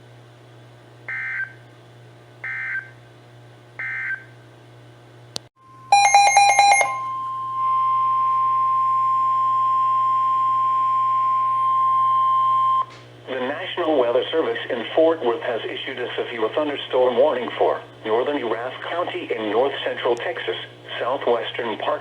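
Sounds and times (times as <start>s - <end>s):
steady alarm tone: 1.1s - 1.6s, 2.4s - 2.9s, 3.8s - 4.3s, 5.6s - 12.8s
rapid harsh beeping: 6.0s - 7.0s.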